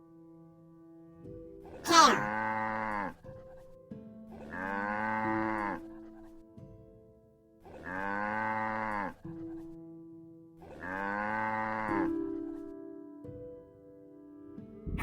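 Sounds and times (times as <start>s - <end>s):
cow mooing: 7.8s - 9.1s, 10.8s - 11.9s.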